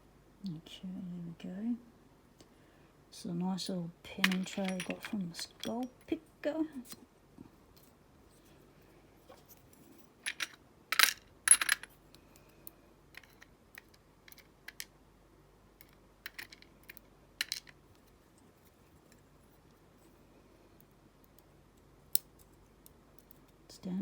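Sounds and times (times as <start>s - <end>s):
metal lock parts clinking: 4.2s - 6.2s, 10.2s - 11.9s, 13.2s - 14.9s, 15.8s - 18.2s.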